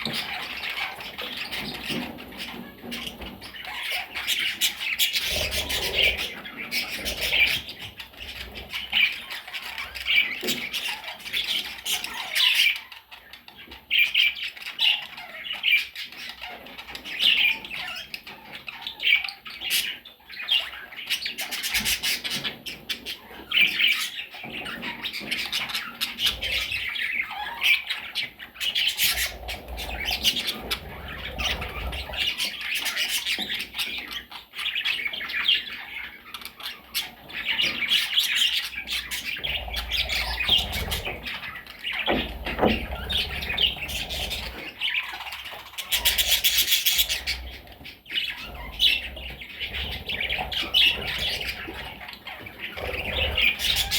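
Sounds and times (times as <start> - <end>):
budgerigar chicks squawking: 0.0 - 53.9.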